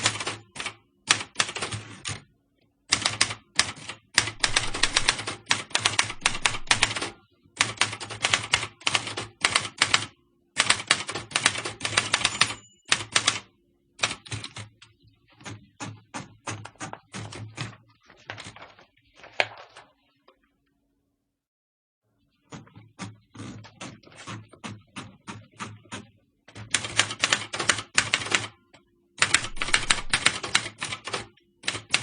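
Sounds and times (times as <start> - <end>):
typewriter keys striking: 2.9 - 13.4, 23.0 - 28.5, 29.2 - 32.0.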